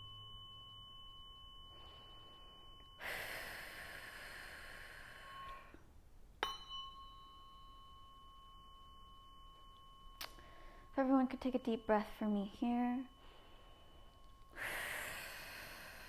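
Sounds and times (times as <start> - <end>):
tuning forks ringing: 0.0 - 16.0
tuning fork struck with a tap: 6.4 - 10.6.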